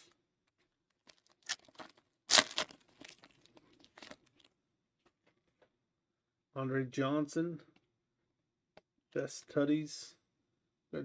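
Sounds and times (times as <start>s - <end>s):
foil wrapper tearing and crinkling: 1.1s - 4.5s.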